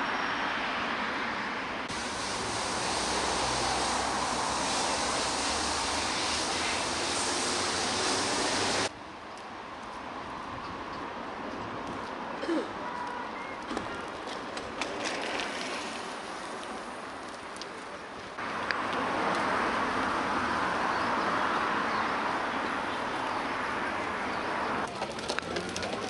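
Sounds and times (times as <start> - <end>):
traffic: 0.0 - 26.0
loud steady hiss: 1.9 - 8.9.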